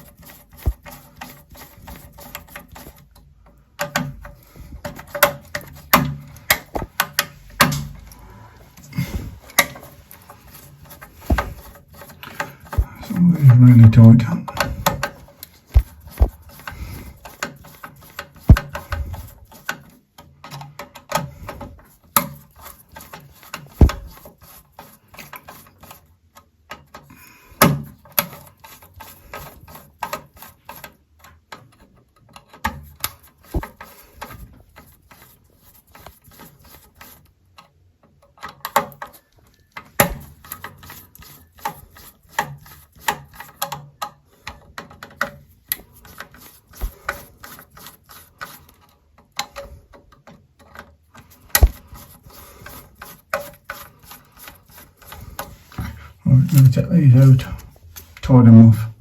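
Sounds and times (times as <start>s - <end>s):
tool clicks and taps on plastic: 2.1s - 8.0s, 14.5s - 21.6s, 37.6s - 40.8s, 49.2s - 52.8s
sharp knocks: 11.3s - 11.7s, 23.8s - 24.2s, 51.6s - 51.8s.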